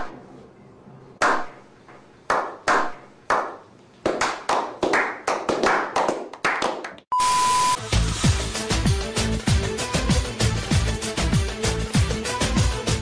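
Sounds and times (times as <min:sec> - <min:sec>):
hand claps: 0:01.2 - 0:01.6, 0:02.3 - 0:07.1.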